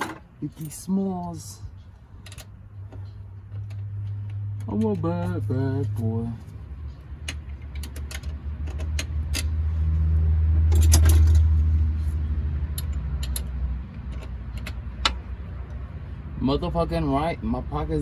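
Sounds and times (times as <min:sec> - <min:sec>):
metal tools clinking and rattling: 0:06.9 - 0:09.6, 0:10.7 - 0:11.6, 0:12.7 - 0:15.2.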